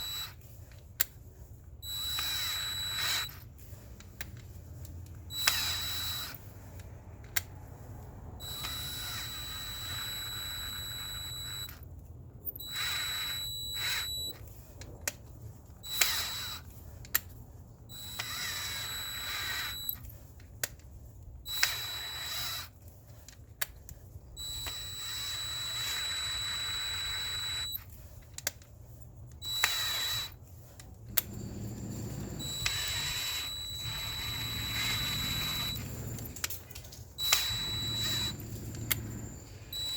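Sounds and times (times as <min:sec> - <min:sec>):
power drill motor whining: 0:00.0 - 0:00.4, 0:01.8 - 0:03.4, 0:05.3 - 0:06.5, 0:08.4 - 0:11.8, 0:12.6 - 0:14.4, 0:15.8 - 0:16.7, 0:17.9 - 0:20.0, 0:21.5 - 0:22.8, 0:24.4 - 0:27.9, 0:29.4 - 0:30.4, 0:31.1 - 0:36.6, 0:37.2 - 0:39.9
sharp drill clicks: 0:00.0 - 0:00.4, 0:01.8 - 0:03.4, 0:05.3 - 0:06.4, 0:08.4 - 0:11.8, 0:12.6 - 0:14.4, 0:15.8 - 0:16.7, 0:17.9 - 0:20.1, 0:21.5 - 0:22.8, 0:24.4 - 0:28.5, 0:29.4 - 0:30.4, 0:31.1 - 0:36.6, 0:37.2 - 0:39.9.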